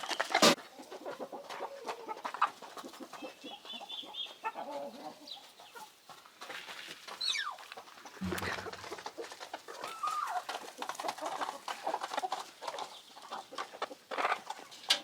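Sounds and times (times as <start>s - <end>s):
chickens clucking: 0.0s - 15.0s.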